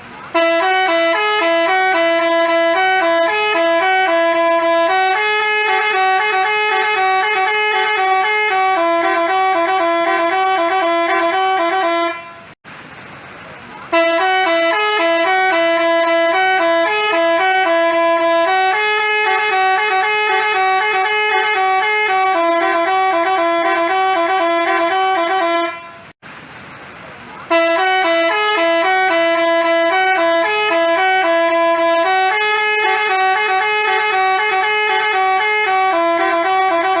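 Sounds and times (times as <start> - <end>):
multi-tone bus horn playing a tune: 0.1 - 12.6, 13.9 - 26.2, 27.4 - 37.0.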